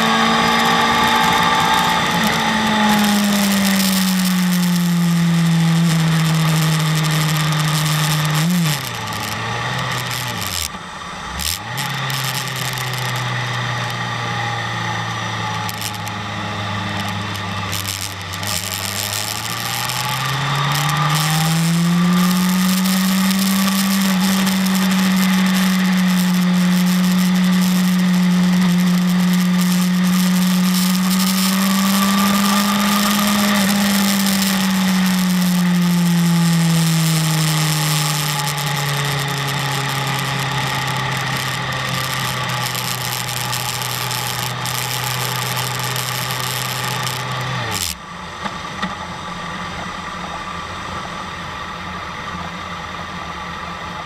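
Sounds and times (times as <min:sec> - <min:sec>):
motorcycle engine revving: 0:00.0 - 0:48.1.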